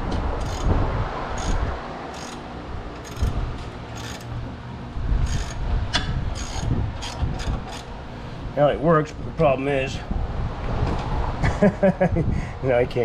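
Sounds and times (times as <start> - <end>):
ratchet wrench clicking: 0.4 - 0.7, 1.4 - 2.4, 3.0 - 4.3, 5.2 - 5.6, 6.3 - 7.9.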